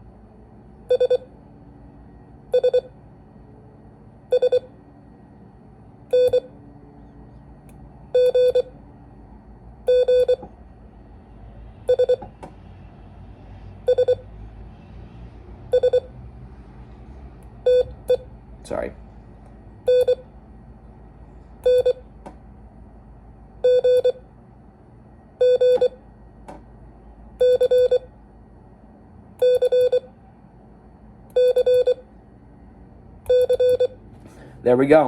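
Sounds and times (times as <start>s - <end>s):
morse code beeps: 0.9s - 1.3s, 2.5s - 2.9s, 4.3s - 4.7s, 6.1s - 6.5s, 8.1s - 8.7s, 9.9s - 10.4s, 11.9s - 12.2s, 13.9s - 14.2s, 15.7s - 16.1s, 17.7s - 18.3s, 19.9s - 20.3s, 21.6s - 22.0s, 23.6s - 24.2s, 25.4s - 26.0s, 27.4s - 28.1s, 29.4s - 30.1s, 31.3s - 32.0s, 33.3s - 34.0s.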